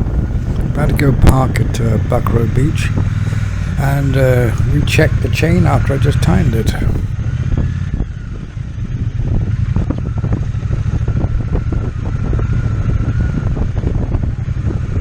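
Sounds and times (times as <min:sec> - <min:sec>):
motorcycle engine running: 0:00.0 - 0:07.1
wind buffeting microphone: 0:00.0 - 0:07.1.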